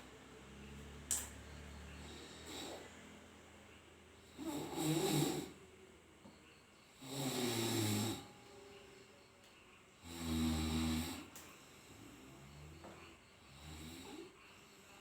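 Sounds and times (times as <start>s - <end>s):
person snoring loudly: 4.3s - 5.6s, 7.0s - 8.3s, 10.0s - 11.3s, 13.5s - 14.4s.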